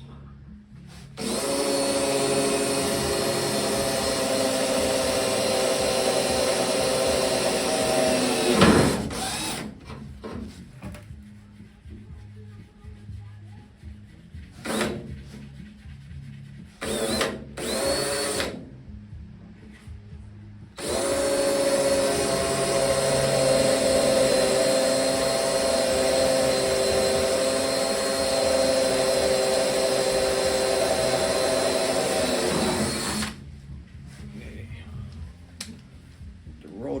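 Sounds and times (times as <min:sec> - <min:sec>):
electric drill boring through steel: 0:01.2 - 0:09.8, 0:14.6 - 0:15.0, 0:16.8 - 0:18.6, 0:20.8 - 0:33.4.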